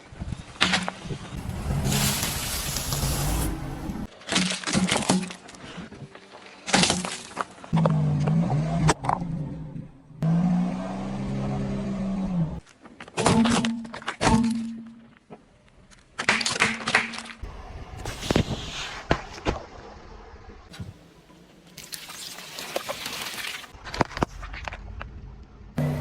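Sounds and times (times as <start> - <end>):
car engine running slowly: 24.8 - 26.0.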